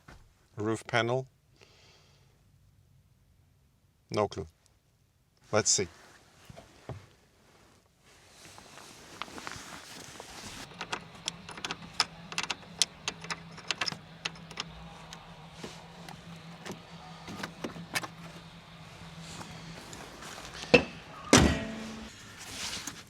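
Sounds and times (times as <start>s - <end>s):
steady low hum: 9.2s - 22.7s
plastic trim clicking and snapping: 10.6s - 18.6s.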